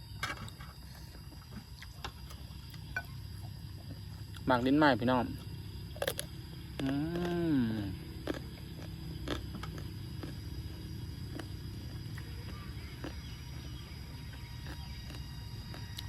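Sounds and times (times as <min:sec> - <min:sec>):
close-up chewing: 0:05.9 - 0:16.0.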